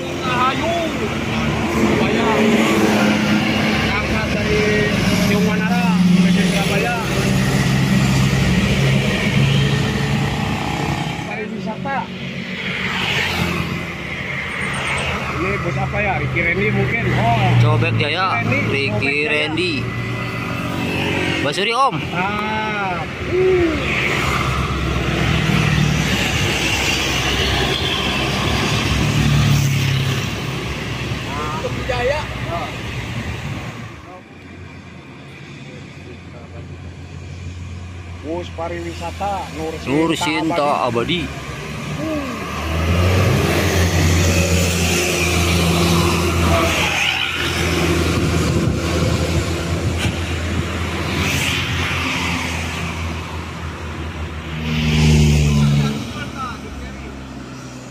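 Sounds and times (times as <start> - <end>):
diesel bus engine hum: 0.0 - 57.9
road and tyre noise: 0.0 - 57.9.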